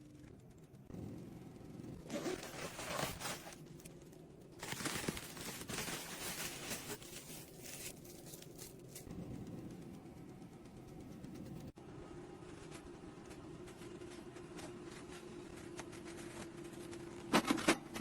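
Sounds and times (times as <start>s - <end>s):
packaging rustling: 4.6s - 9.1s.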